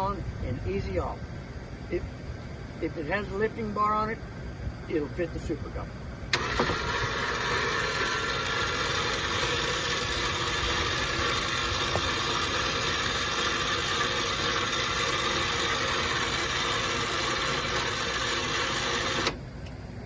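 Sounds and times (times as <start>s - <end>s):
electric lift motor whining: 6.3s - 19.5s.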